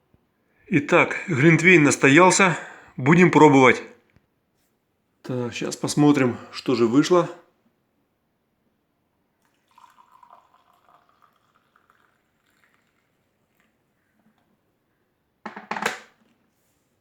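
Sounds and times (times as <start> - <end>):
liquid trickling into a mug: 9.4 - 14.4.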